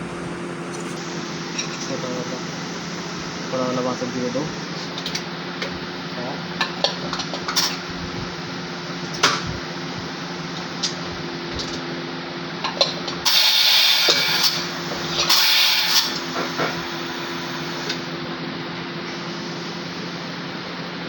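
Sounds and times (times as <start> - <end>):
electrical hum: 0.0 - 21.0
loud hissing bursts: 13.2 - 18.2.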